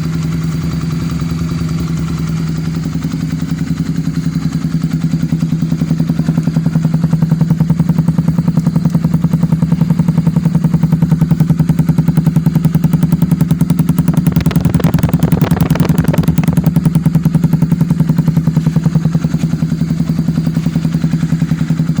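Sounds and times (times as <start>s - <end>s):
motorcycle engine idling: 0.0s - 22.0s
brief rattly noise: 14.1s - 16.9s.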